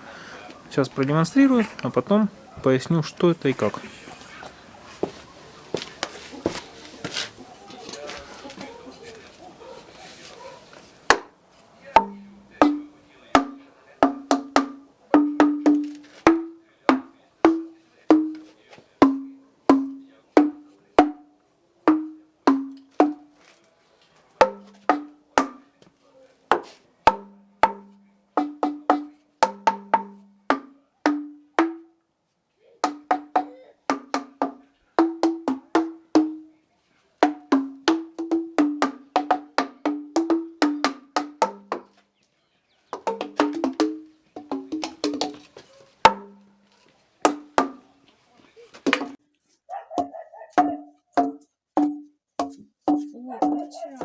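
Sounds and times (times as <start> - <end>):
mallet knocking wooden beams: 11.1 - 11.3, 12.0 - 21.3, 21.9 - 23.3, 24.4 - 25.6, 26.5 - 31.9, 32.8 - 36.5, 37.2 - 41.9, 43.0 - 45.5, 47.3 - 47.9.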